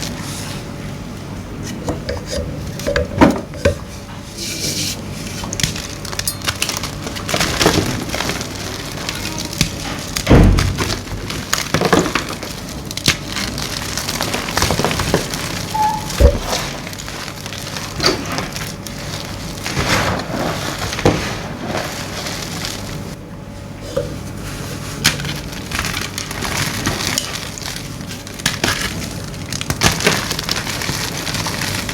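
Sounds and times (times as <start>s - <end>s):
chalk being crushed and crumbled: 5.4s - 23.2s, 24.9s - 31.9s.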